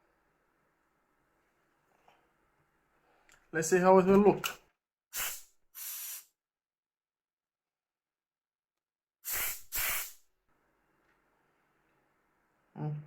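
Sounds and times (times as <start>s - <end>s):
puffs of blown air: 5.1s - 6.4s, 9.2s - 10.3s.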